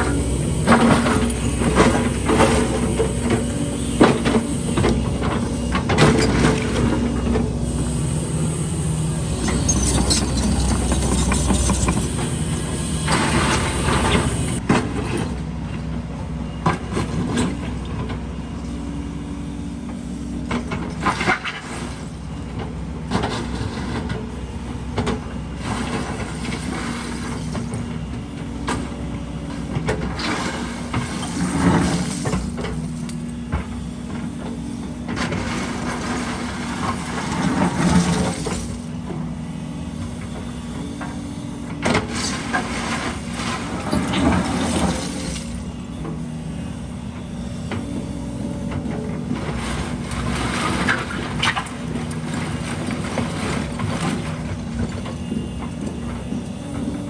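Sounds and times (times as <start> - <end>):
metal and rubble clanking: 0.0 - 8.0, 8.6 - 15.2
diesel engine of heavy machinery: 0.0 - 57.0.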